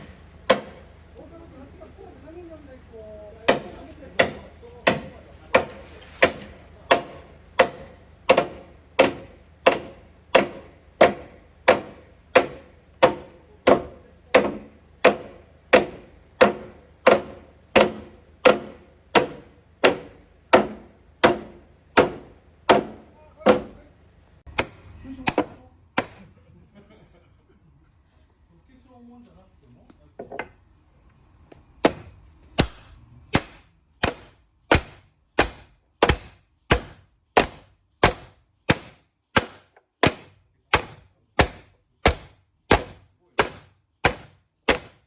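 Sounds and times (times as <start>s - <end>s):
wooden mallet striking timber: 0.0s - 0.8s, 3.5s - 23.8s, 24.5s - 26.2s, 31.8s - 45.0s.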